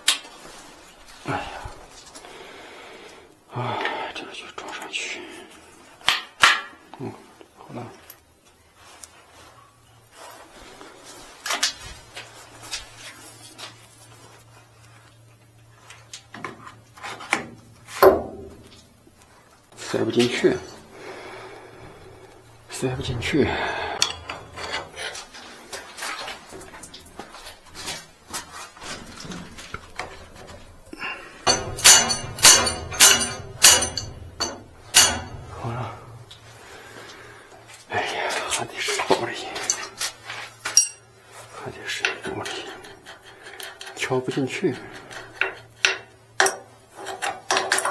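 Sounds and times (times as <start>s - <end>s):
faint low hum: 6.8s - 45.6s
metal parts and tools clicking: 24.0s - 25.4s, 31.4s - 35.6s, 40.6s - 41.1s, 42.0s - 47.9s.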